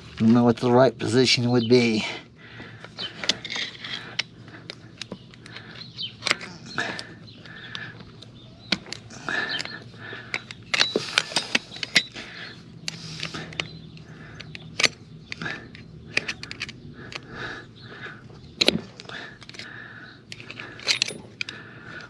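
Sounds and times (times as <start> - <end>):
screwdriver clicking and scraping metal: 10.3 - 12.2, 20.3 - 21.6.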